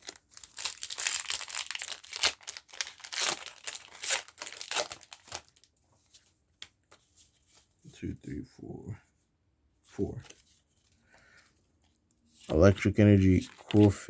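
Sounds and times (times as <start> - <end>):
foil wrapper tearing and crinkling: 0.0 - 5.7, 13.3 - 14.0.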